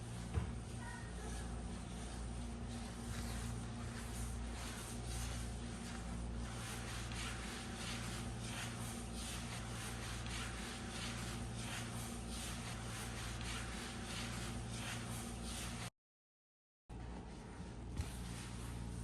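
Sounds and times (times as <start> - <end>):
steady low hum: 0.0 - 15.9, 16.9 - 19.0
rubbing strokes: 0.8 - 15.9.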